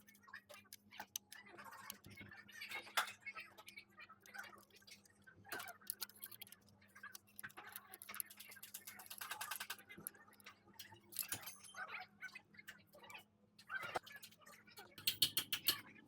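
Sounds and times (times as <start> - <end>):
metallic clinks of tools: 11.1 - 11.8.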